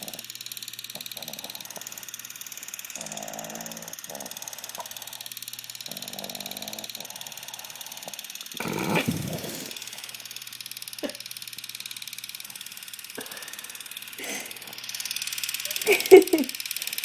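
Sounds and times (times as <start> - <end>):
puppy snoring: 0.0 - 0.3, 0.9 - 2.3, 3.0 - 10.4.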